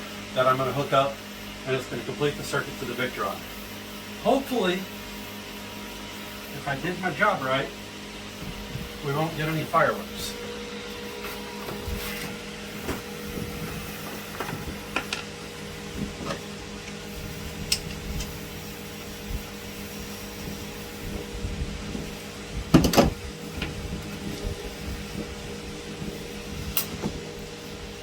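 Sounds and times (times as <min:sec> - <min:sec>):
steady electrical hum: 0:00.0 - 0:28.0
electrical spark snaps: 0:26.6 - 0:27.0.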